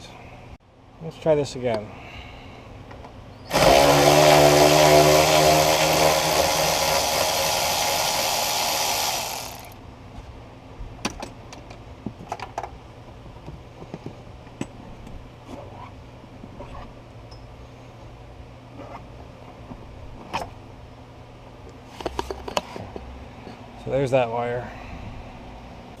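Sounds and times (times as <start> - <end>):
cordless power tool running: 3.5 - 9.8.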